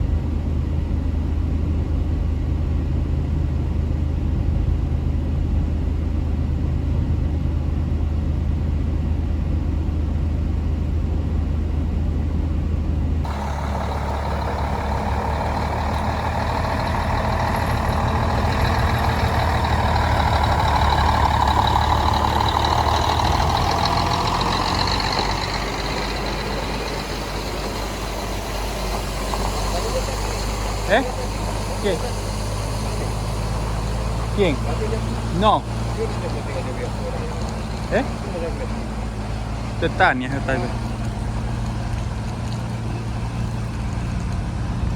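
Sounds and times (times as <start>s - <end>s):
diesel engine hum: 0.0s - 44.9s
loud machine sound: 13.3s - 40.9s.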